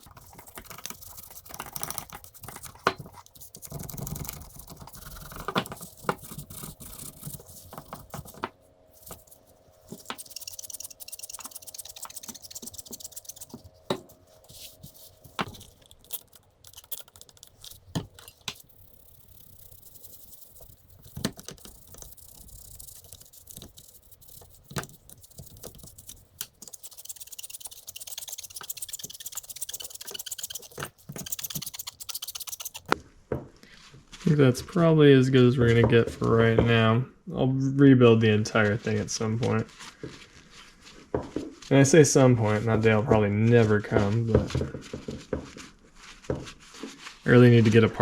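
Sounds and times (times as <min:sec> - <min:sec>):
scrubbing metal part: 0:09.0 - 0:33.0.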